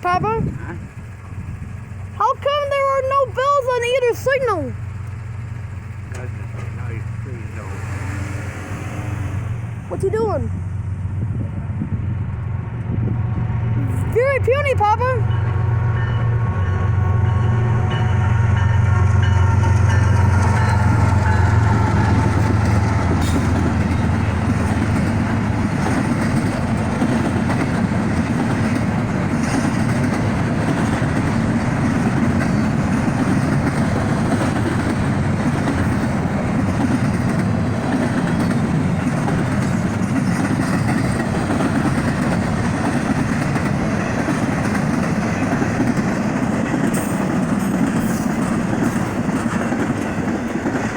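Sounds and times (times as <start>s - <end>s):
railcars rumbling and clattering: 0.0s - 50.9s
low engine drone: 4.8s - 29.4s.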